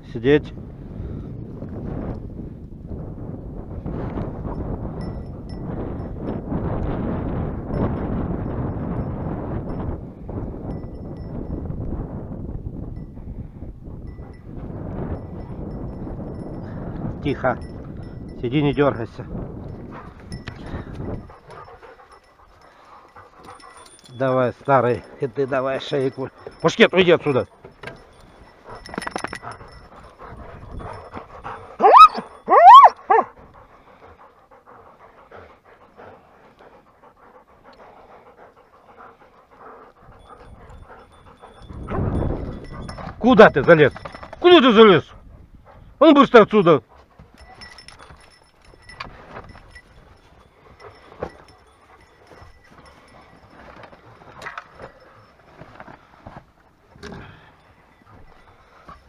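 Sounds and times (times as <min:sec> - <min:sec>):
clinks and knocks: 0:17.2 - 0:32.5, 0:40.2 - 0:44.5, 0:47.2 - 0:59.0
dog panting: 0:19.0 - 0:44.4, 0:46.6 - 0:59.0
dog whining: 0:31.8 - 0:33.3.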